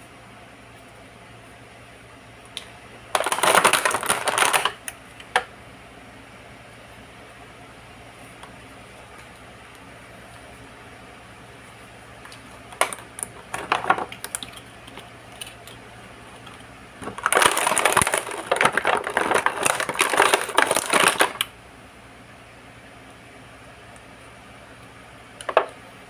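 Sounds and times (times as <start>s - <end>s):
packaging crinkling: 3.1s - 4.9s, 12.3s - 21.5s.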